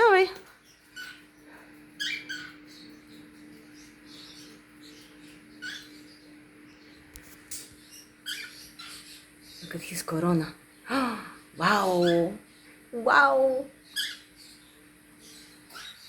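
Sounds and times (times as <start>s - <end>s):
cockatiels chirping: 0.1s - 9.8s, 11.7s - 12.4s, 13.9s - 14.6s, 15.3s - 16.0s.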